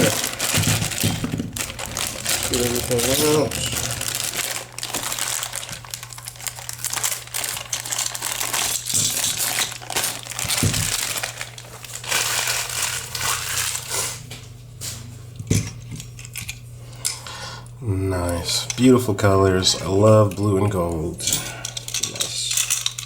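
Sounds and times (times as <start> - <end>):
plastic packaging crinkling: 0.0 - 14.2.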